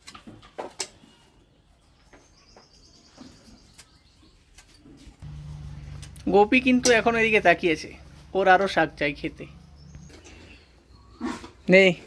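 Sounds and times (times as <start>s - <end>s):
birds chirping faintly: 0.4s - 12.0s
low steady hum: 5.2s - 10.8s.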